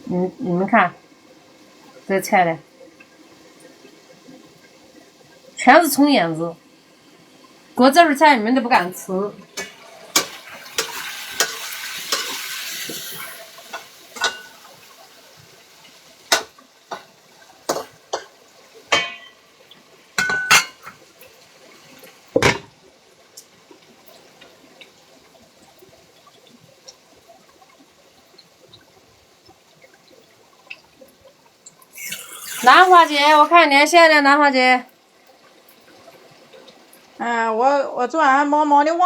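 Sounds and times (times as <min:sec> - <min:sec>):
frying sizzle: 0:00.0 - 0:38.7
pots and dishes clanking: 0:09.6 - 0:13.0, 0:13.7 - 0:14.7, 0:17.7 - 0:19.5, 0:20.2 - 0:21.0, 0:22.4 - 0:22.7.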